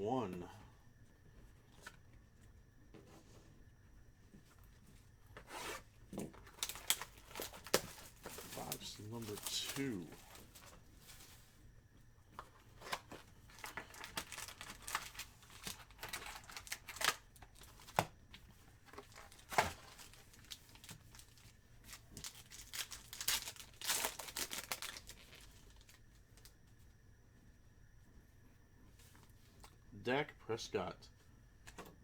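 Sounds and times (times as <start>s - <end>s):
plastic wrapping tearing and crinkling: 6.4s - 10.7s, 12.8s - 18.1s, 18.8s - 26.0s.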